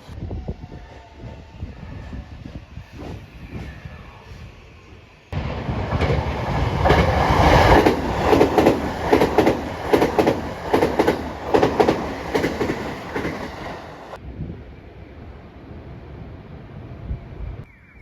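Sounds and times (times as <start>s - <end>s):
train wheels clattering over rail joints: 5.5s - 14.2s.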